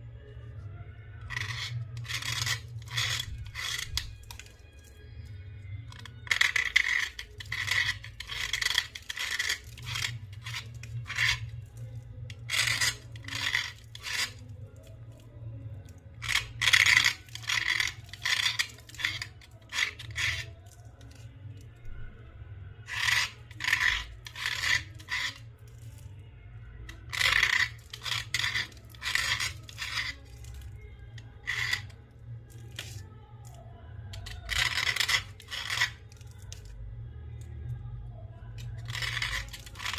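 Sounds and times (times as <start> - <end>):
slate scraping: 1.2 - 4.9, 5.9 - 14.9, 16.1 - 21.3, 22.8 - 26.0, 26.9 - 33.1, 34.1 - 36.7, 38.6 - 39.9.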